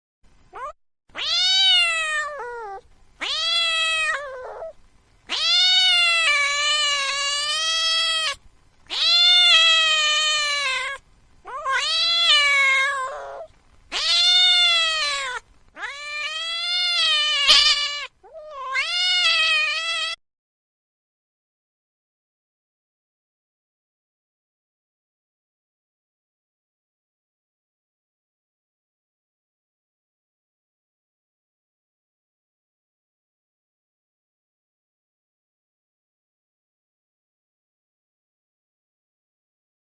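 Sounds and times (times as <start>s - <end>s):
cat meowing: 0.6s - 20.2s.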